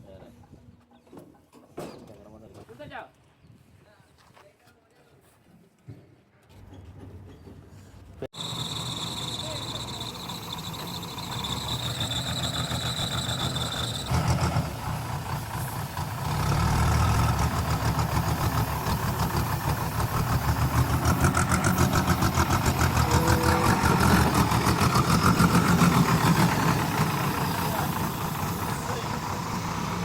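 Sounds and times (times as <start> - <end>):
heavy diesel engine throbbing: 8.4 - 30.0.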